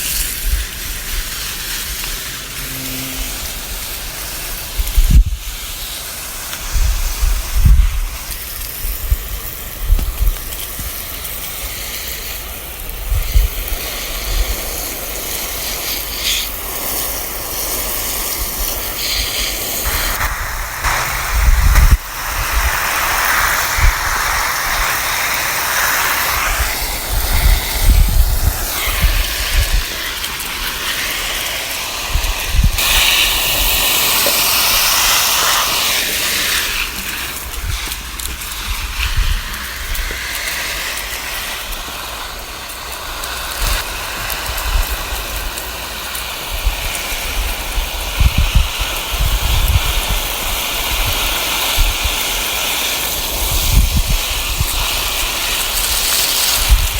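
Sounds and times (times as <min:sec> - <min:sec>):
garden hose spraying water: 0:00.0 - 0:56.9
low rumbles: 0:19.8 - 0:24.7.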